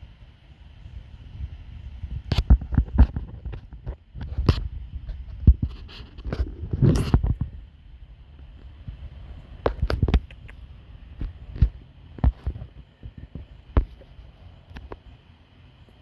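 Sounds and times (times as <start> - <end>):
animal knocks and rustles: 2.2 - 7.6, 9.6 - 10.4, 11.1 - 15.1.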